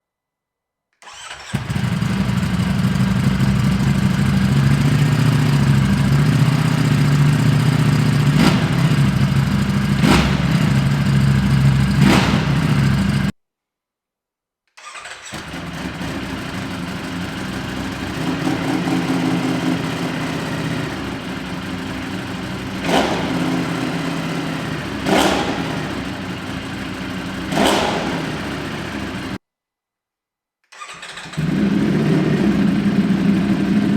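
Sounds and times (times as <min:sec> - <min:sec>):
engine throttle blips: 0:01.2 - 0:13.3, 0:15.4 - 0:29.4
motorcycle engine idling: 0:01.5 - 0:13.3, 0:15.4 - 0:29.4, 0:31.4 - 0:33.9.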